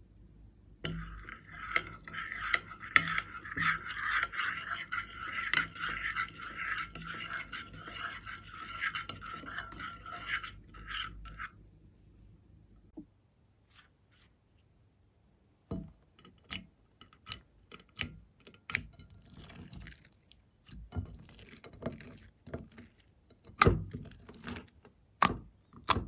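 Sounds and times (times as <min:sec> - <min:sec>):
slime scraping in plastic container: 0:21.0 - 0:24.7.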